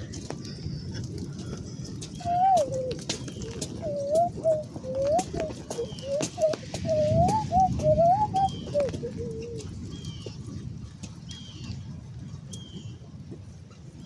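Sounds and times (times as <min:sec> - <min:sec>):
bird chirping: 0:02.0 - 0:10.3
wavering whistle-like tone: 0:02.2 - 0:09.5.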